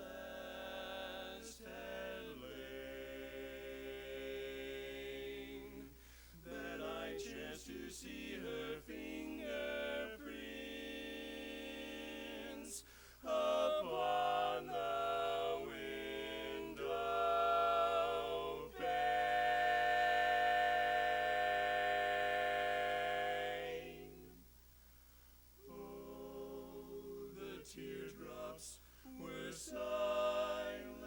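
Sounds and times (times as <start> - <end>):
male voices singing in harmony: 0.0 - 24.4, 25.6 - 31.0.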